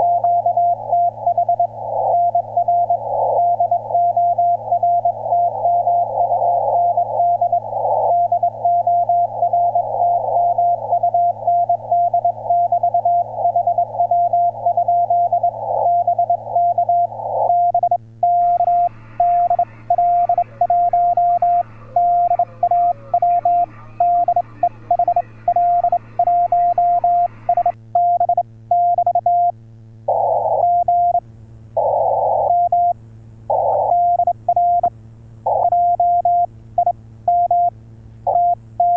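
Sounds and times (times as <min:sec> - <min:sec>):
radio band noise: 0:00.0 - 0:27.8, 0:30.1 - 0:30.9, 0:31.8 - 0:32.8, 0:33.5 - 0:34.2, 0:35.5 - 0:35.9
morse code tone: 0:00.0 - 0:29.5, 0:31.8 - 0:34.9, 0:35.5 - 0:37.7, 0:38.3 - 0:38.9
steady low hum: 0:00.0 - 0:38.9.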